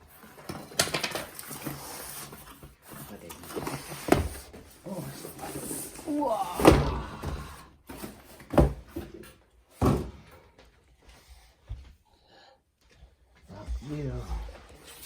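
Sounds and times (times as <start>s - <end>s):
cardboard rustling and scraping: 0.0s - 10.1s
dull thumps of cardboard: 3.5s - 4.8s.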